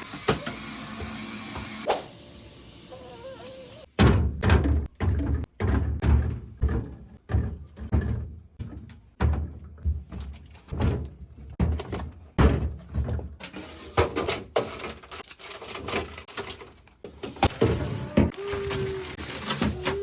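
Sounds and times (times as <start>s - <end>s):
food containers thudding and knocking: 4.0s - 13.4s.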